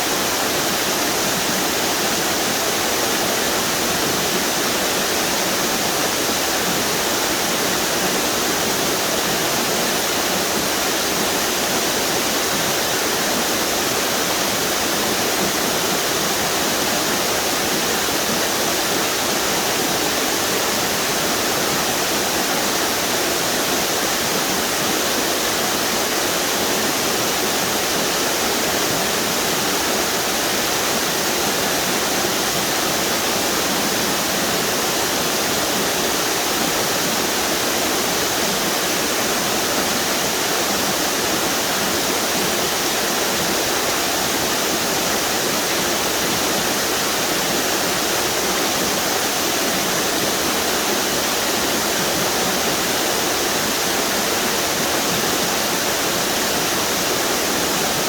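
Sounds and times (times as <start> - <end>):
water roaring over waterfalls: 0.0 - 58.0.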